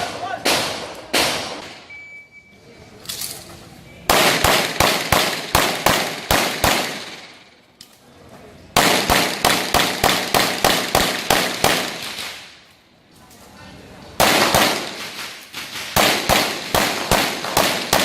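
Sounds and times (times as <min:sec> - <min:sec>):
gunshots with echo: 0:04.1 - 0:07.5, 0:08.8 - 0:12.5, 0:14.2 - 0:18.0.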